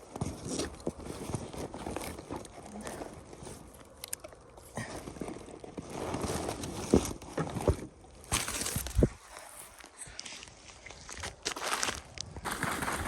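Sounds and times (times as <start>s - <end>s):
footsteps through dry leaves: 8.3s - 13.0s.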